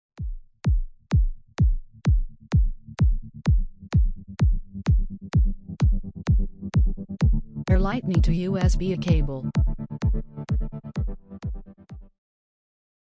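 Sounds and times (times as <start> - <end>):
electronic music with kick drum: 0.2 - 12.1.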